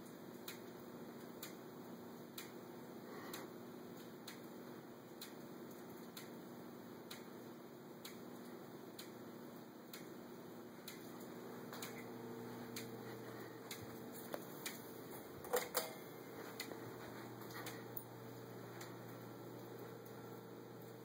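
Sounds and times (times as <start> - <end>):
ceiling fan humming: 0.0 - 21.0
light clicks and taps: 10.8 - 12.1, 12.7 - 18.1.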